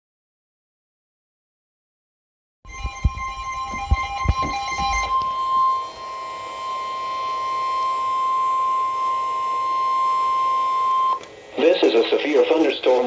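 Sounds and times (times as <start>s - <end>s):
low thumps: 2.7s - 5.6s
long steady high alarm beep: 2.7s - 12.1s
broken beeping tone: 2.7s - 13.0s.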